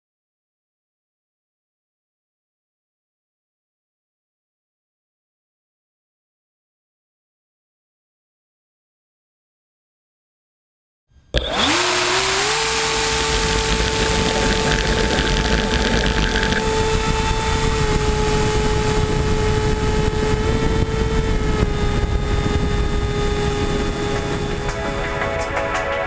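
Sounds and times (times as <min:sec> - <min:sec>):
electric motor and propeller whine: 0:11.4 - 0:26.0
rushing wind noise: 0:12.8 - 0:26.0.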